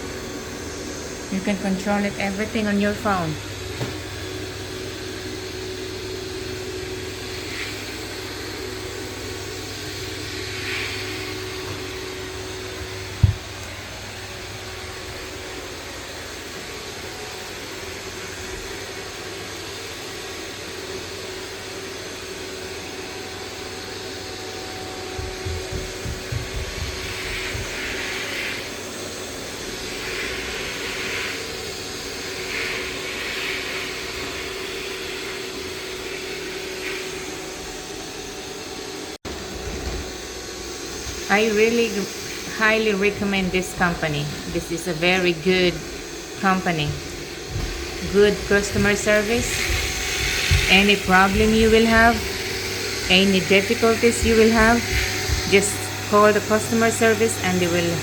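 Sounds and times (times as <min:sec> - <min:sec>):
robot vacuum running: 0:00.0 - 0:58.0
sharp thump: 0:13.2 - 0:13.4.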